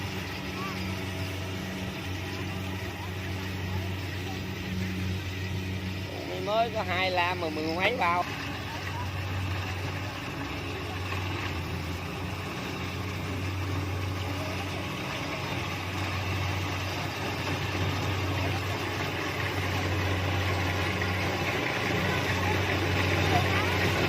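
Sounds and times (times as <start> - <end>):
combine harvester engine running: 0.0 - 24.0
machinery noise: 0.0 - 24.0.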